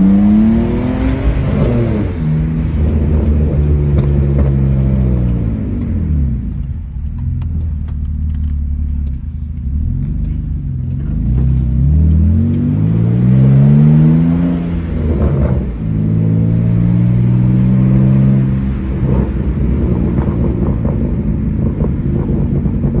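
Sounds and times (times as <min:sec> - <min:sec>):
car engine revving: 0:00.0 - 0:23.0.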